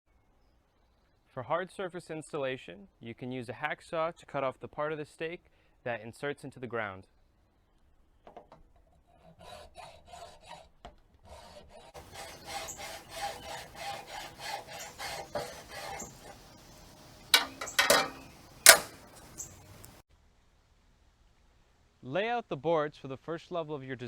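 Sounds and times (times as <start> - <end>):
hacksaw rasping: 12.0 - 20.0
sharp knocks: 12.0 - 20.0.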